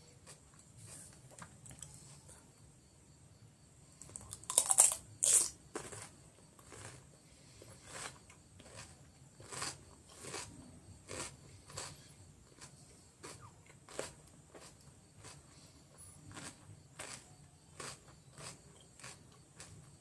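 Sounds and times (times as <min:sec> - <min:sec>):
cucumber being bitten and chewed: 0:04.0 - 0:07.0, 0:07.8 - 0:15.5, 0:16.2 - 0:20.0.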